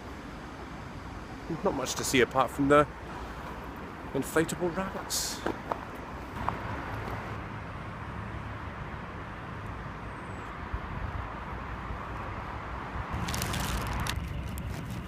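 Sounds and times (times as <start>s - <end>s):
road traffic hum: 0.0s - 15.0s.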